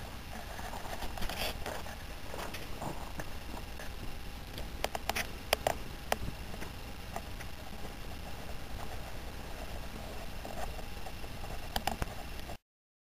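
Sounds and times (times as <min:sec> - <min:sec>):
faint low hum: 0:00.0 - 0:12.6
sharp clicks and taps: 0:04.5 - 0:07.3, 0:10.6 - 0:12.1.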